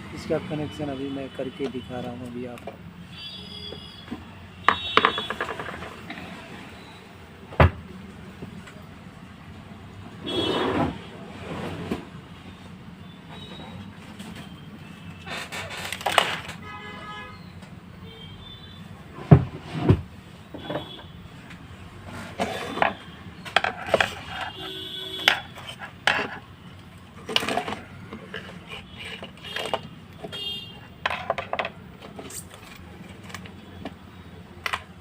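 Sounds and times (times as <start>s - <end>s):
clicks and taps of wiring work: 1.6s - 2.8s.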